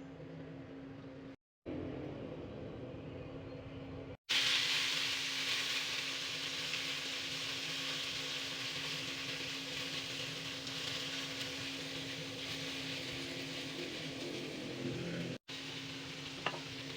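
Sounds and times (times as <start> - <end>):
kitchen hum: 0.0 - 16.9
food sizzling in hot oil: 4.3 - 16.9.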